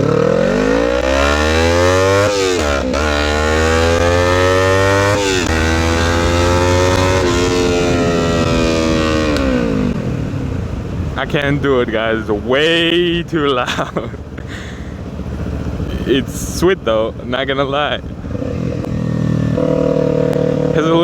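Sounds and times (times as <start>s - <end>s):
loud motorcycle engine revving: 0.0s - 10.5s, 17.4s - 21.0s.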